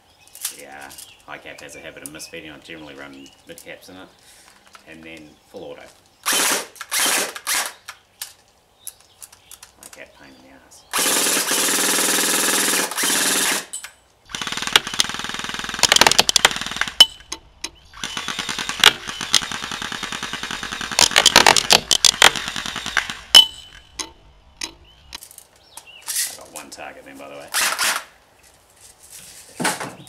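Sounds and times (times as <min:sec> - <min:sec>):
airsoft gun firing bursts: 0:11.0 - 0:13.7, 0:14.3 - 0:17.2, 0:18.0 - 0:23.5.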